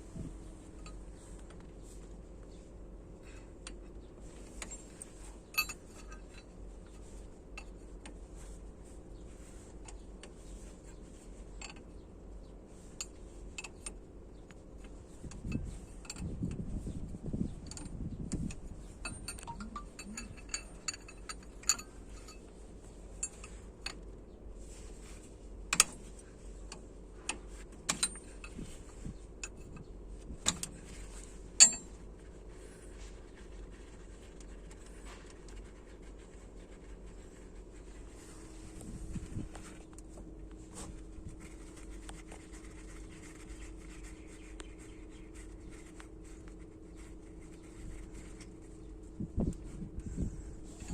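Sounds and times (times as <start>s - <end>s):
faint steady hum: 0.0s - 50.9s
metal parts clinking and knocking: 4.6s - 6.5s, 17.6s - 22.5s, 27.9s - 29.8s, 30.4s - 32.0s.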